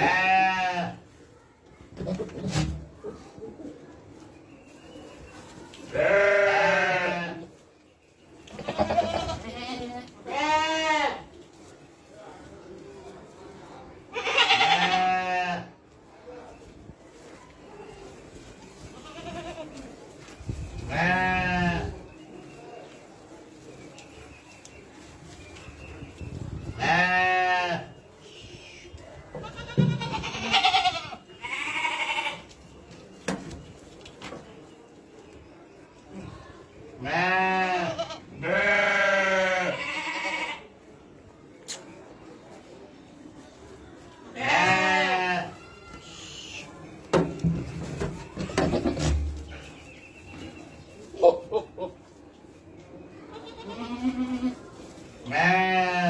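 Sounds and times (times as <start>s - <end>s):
livestock bleat: 0.0s - 1.0s, 5.9s - 7.4s, 8.6s - 11.2s, 14.2s - 15.7s, 19.0s - 19.7s, 29.5s - 32.4s, 37.0s - 40.6s, 44.4s - 45.6s, 53.3s - 54.6s, 55.3s - 56.0s
sheep bleating loudly: 0.0s - 1.0s, 6.0s - 7.4s, 37.1s - 40.6s, 44.4s - 45.6s
knocks and shuffling: 45.9s - 53.1s.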